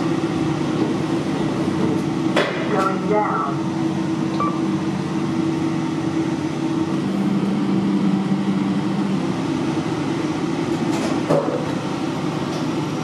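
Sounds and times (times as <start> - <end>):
lift motor hum: 0.0 - 13.0.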